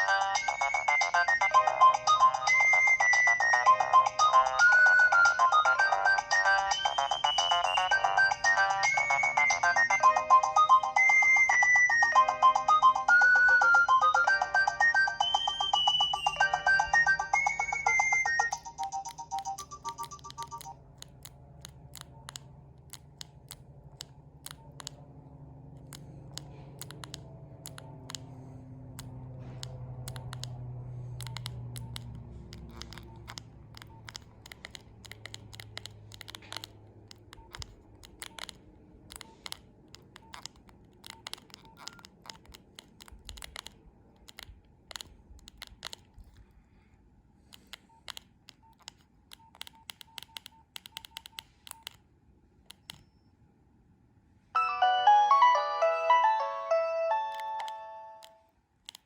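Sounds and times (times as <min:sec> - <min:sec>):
phone ringtone: 0:00.0 - 0:20.8, 0:40.1 - 0:42.4, 0:54.6 - 0:58.5
phone keypad buttons clicking: 0:00.0 - 0:25.1, 0:25.8 - 0:46.4, 0:47.5 - 0:52.0, 0:52.6 - 0:53.2, 0:57.1 - 0:59.0.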